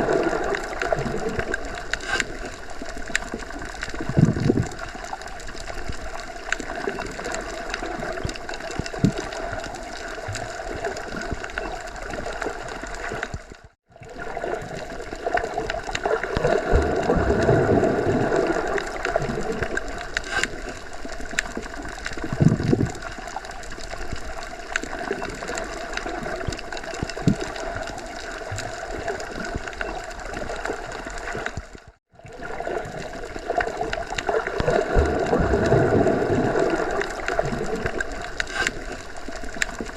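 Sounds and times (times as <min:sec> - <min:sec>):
muffled underwater water wash: 0:00.0 - 0:39.9
water gurgles: 0:00.0 - 0:39.9
low underwater thumps: 0:16.5 - 0:18.1.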